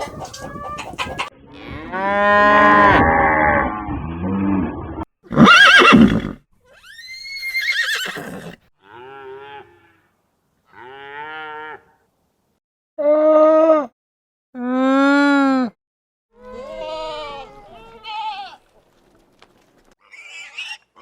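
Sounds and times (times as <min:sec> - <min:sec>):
horse whinnying: 0:05.3 - 0:08.6.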